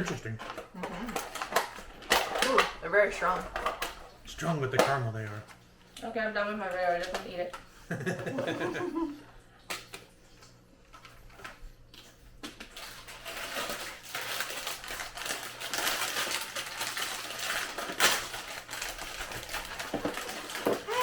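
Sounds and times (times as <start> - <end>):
candy packaging crinkling: 0.0 - 5.4, 10.9 - 21.0.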